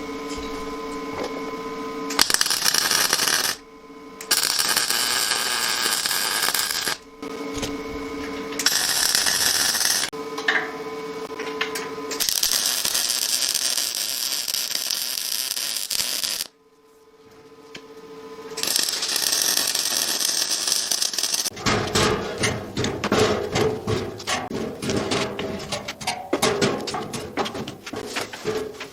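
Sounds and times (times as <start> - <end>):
steady hum: 0.0 - 28.9
welding crackling hiss: 2.1 - 3.6, 4.2 - 7.1, 8.6 - 10.1, 12.1 - 16.6, 18.6 - 21.6.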